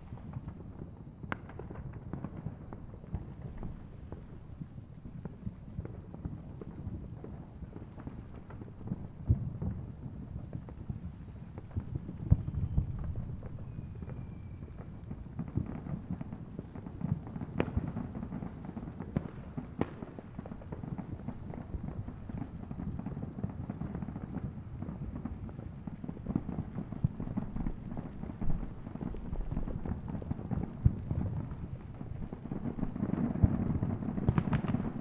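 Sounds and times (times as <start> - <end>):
distant fireworks booming: 0.0 - 35.0
sharp firework cracks: 1.2 - 4.4, 26.2 - 35.0.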